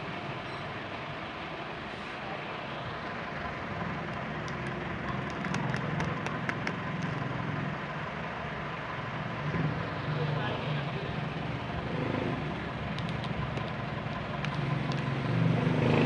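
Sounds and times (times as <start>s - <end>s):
engine-like rumble: 0.0s - 16.0s
sharp clicks: 4.0s - 7.4s, 12.8s - 15.1s.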